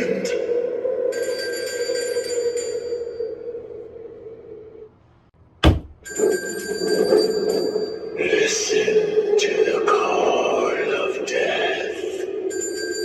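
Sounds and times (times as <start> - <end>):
sharp knock: 5.6 - 6.1.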